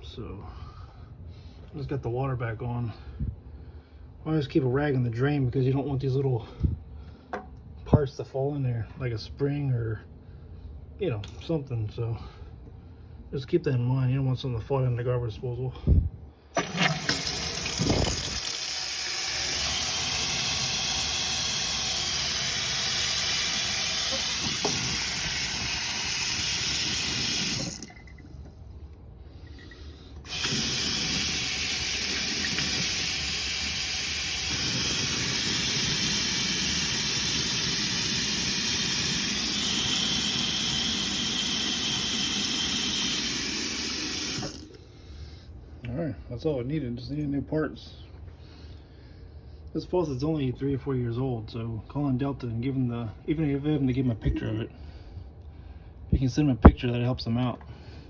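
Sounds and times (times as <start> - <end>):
water running from faucet into sink: 16.6 - 28.2, 30.3 - 44.8.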